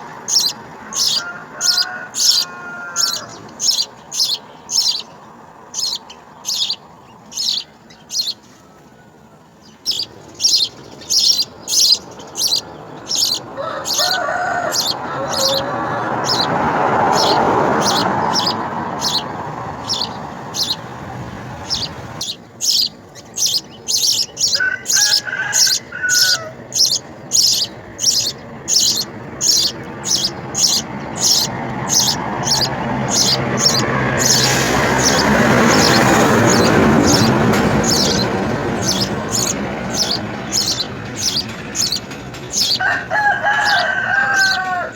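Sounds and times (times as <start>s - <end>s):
sparrows chirping: 0.0s - 44.9s
background rush: 9.1s - 44.9s.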